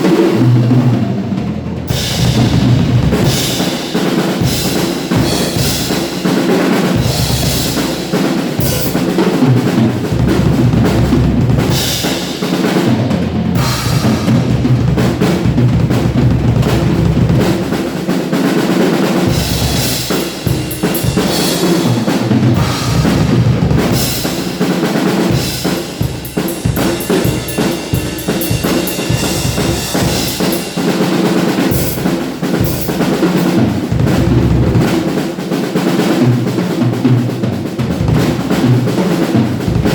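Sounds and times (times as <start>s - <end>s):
acoustic drum kit playing: 0.0s - 39.9s
cymbal crashes: 19.3s - 32.0s.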